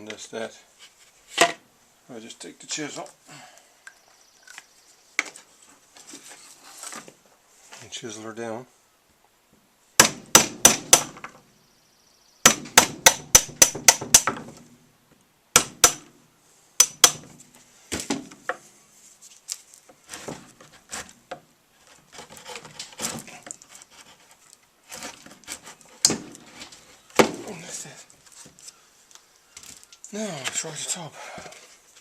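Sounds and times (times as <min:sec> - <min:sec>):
chisel strikes on wood: 0:12.4 - 0:14.4, 0:15.6 - 0:16.1, 0:16.8 - 0:17.2
scraping wood: 0:19.7 - 0:28.8.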